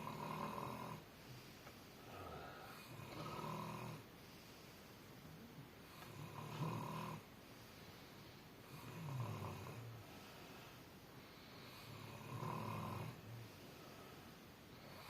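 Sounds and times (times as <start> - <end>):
person snoring: 0.0 - 1.0, 2.0 - 4.1, 5.9 - 7.2, 8.7 - 10.0, 11.6 - 13.5.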